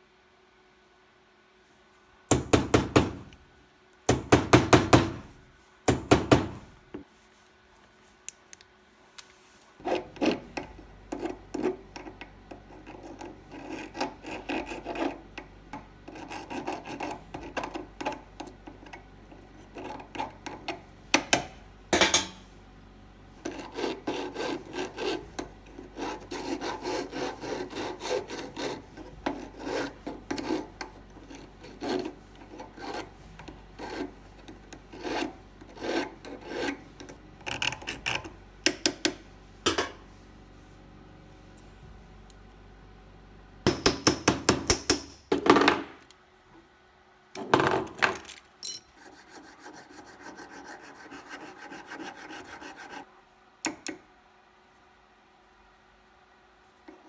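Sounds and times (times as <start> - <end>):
hand file rasping on metal: 11.1 - 15.2, 16.1 - 18.2, 23.4 - 37.1, 49.0 - 53.0.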